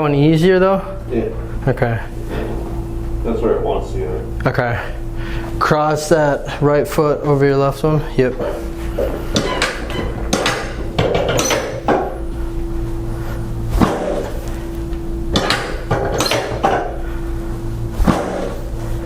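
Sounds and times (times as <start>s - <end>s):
steady low hum: 0.0s - 19.0s
heavy thump: 13.7s - 14.4s, 17.9s - 18.9s.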